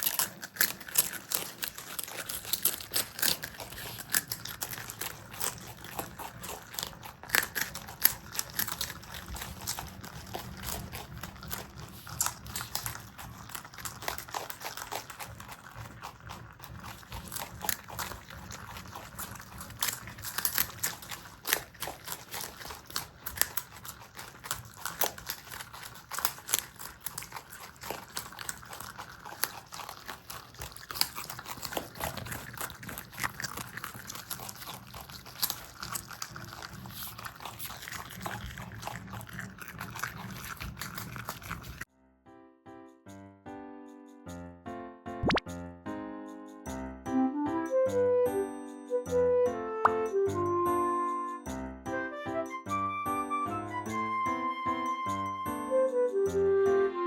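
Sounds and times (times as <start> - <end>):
marmots chewing food: 0.0 - 41.9.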